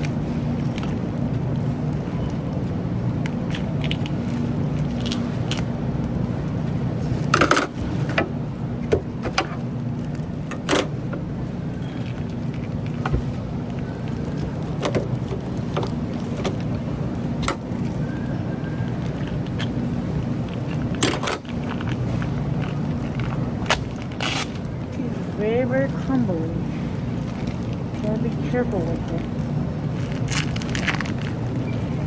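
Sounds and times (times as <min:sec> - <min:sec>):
low machine hum: 0:00.0 - 0:32.0
knocks and clicks of handling: 0:07.3 - 0:09.7, 0:14.8 - 0:16.7.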